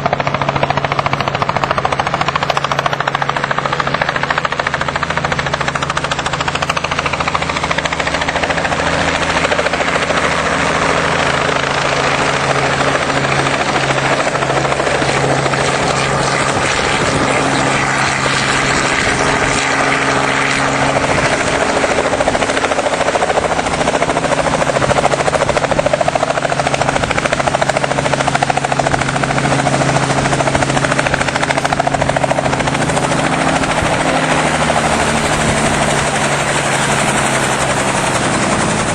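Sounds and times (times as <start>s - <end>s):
helicopter rotor and engine drone: 0.0s - 38.9s.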